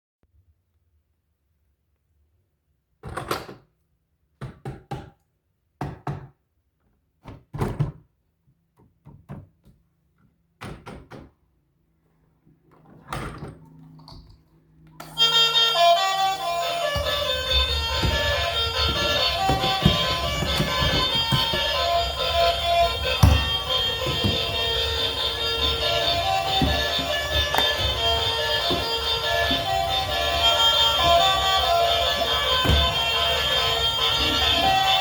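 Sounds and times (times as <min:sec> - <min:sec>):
melodic music: 0:15.0 - 0:35.0
short thunks and knocks: 0:16.8 - 0:34.8.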